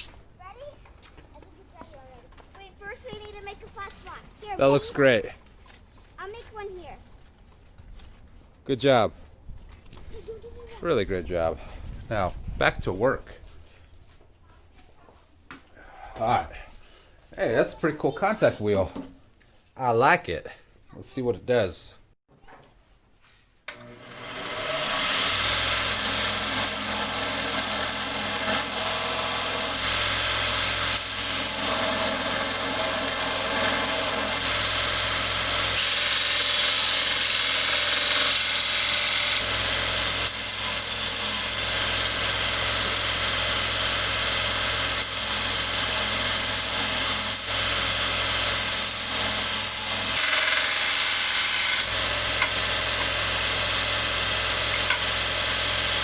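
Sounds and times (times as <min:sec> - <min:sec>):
belt grinder motor running: 0:23.7 - 0:56.0
blade grinding hiss: 0:24.6 - 0:56.0.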